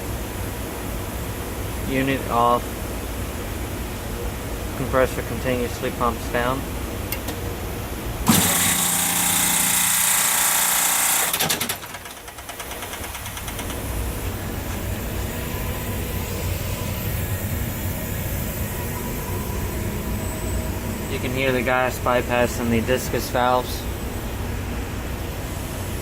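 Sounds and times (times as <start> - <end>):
compressor hissing and humming: 0.0 - 26.0
gas hissing through compressor: 0.0 - 26.0
rattle of clicks: 11.3 - 13.9.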